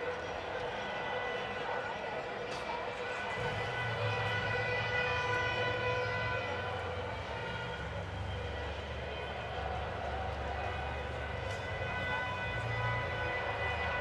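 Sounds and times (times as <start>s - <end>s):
crowd shouting: 0.0s - 14.0s
long held horn tones: 3.1s - 8.8s, 10.6s - 14.0s
traffic din: 3.1s - 14.0s.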